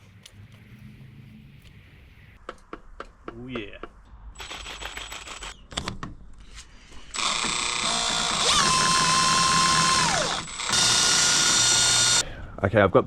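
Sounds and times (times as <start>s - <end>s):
electric motor whine: 7.1s - 12.2s.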